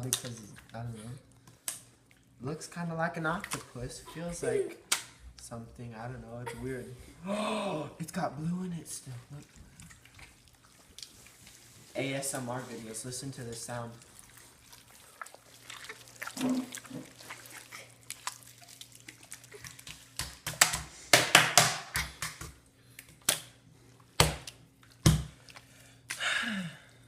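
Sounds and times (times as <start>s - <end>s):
slime squelching: 8.9s - 20.9s, 22.9s - 26.2s.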